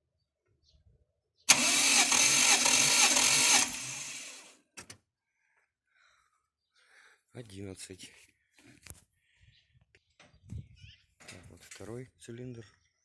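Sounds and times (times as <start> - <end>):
starter motor cranking engine: 1.5 - 4.5.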